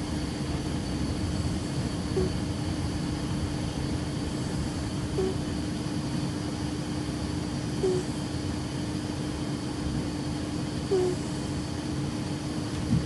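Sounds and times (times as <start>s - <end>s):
cat snoring: 2.1s - 2.5s, 4.6s - 5.4s, 7.8s - 8.2s, 10.9s - 11.4s.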